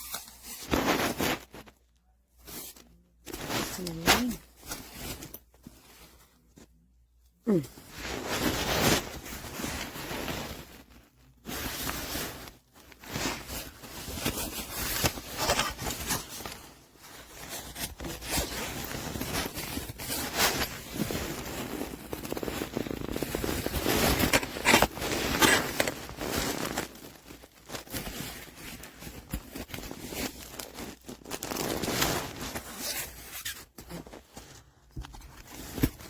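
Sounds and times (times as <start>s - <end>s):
backpack zipper strokes: 17.9s - 26.9s.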